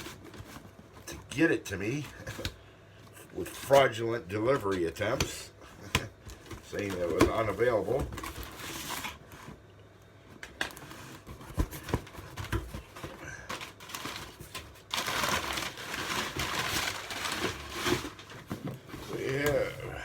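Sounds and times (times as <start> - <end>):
packaging crinkling: 10.6 - 19.7.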